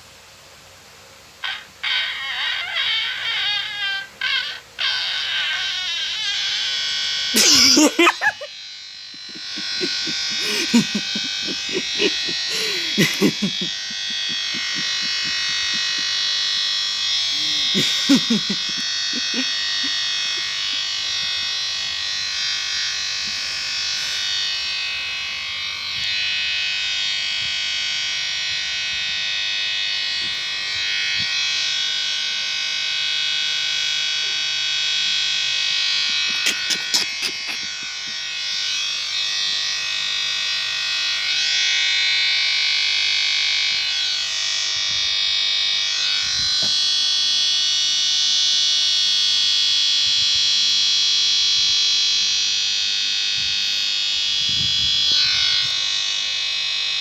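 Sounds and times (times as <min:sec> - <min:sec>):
distorted electronic fart buzz: 0:01.4 - 0:08.5, 0:09.1 - 0:16.2.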